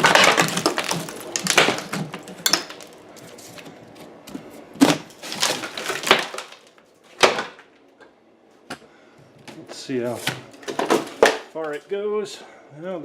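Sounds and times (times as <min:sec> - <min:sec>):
plaster and lath breaking: 0:00.0 - 0:03.0, 0:04.8 - 0:07.6.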